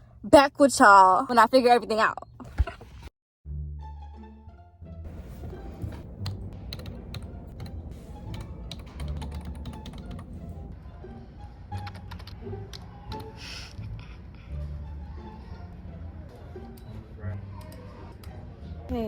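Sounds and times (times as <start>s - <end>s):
background music: 3.5s - 19.0s
keyboard typing: 6.2s - 7.7s, 8.3s - 10.3s, 11.8s - 13.3s.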